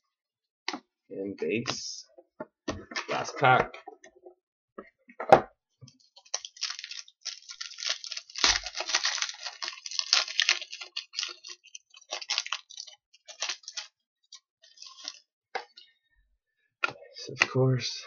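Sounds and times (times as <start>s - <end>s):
wrapper tearing and crinkling: 6.0s - 15.2s.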